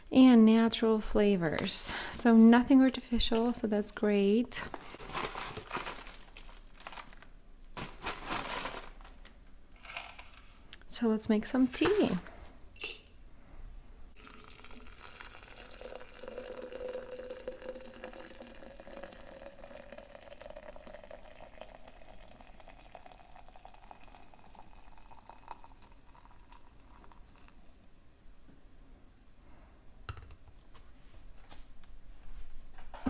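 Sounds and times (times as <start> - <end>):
water pouring into pot: 14.2 - 27.8.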